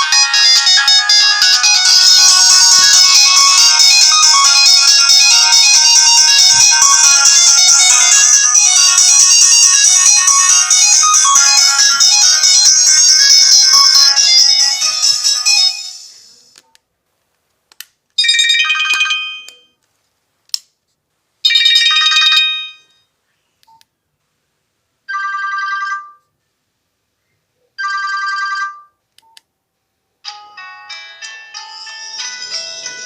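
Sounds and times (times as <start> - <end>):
ringtone melody: 0.0 - 16.2, 18.2 - 19.7, 30.3 - 33.0.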